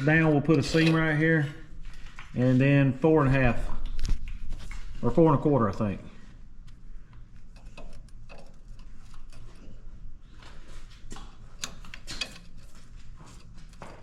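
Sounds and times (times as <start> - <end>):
low steady hum: 0.0 - 14.0
hand tools clicking and tapping: 11.1 - 14.0.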